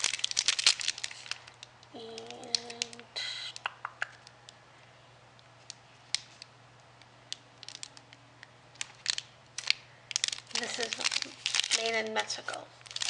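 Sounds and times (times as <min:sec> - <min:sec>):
plastic wrapper crinkling: 0:00.0 - 0:03.1, 0:05.5 - 0:13.0
steady low hum: 0:00.0 - 0:13.0
light crackles and clicks: 0:05.3 - 0:11.8.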